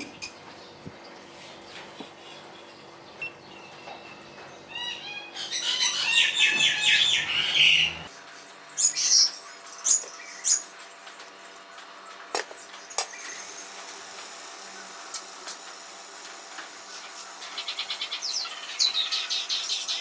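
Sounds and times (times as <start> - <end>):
bird chirping: 2.2 - 10.7, 12.4 - 13.8, 17.5 - 20.0.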